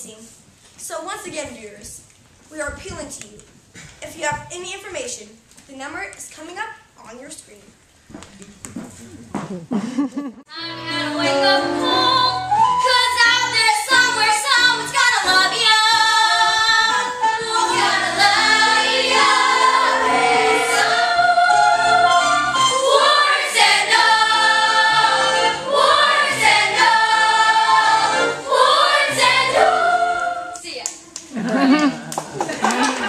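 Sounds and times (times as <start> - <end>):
instrumental accompaniment: 10.5 - 30.6
children singing together: 10.6 - 30.6.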